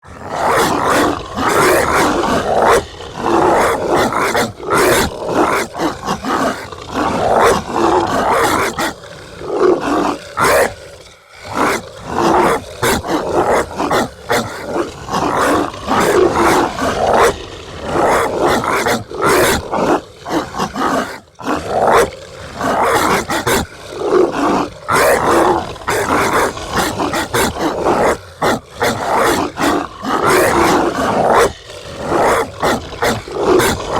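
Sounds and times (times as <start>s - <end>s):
monstrous dog barking and growling: 0.0s - 33.9s.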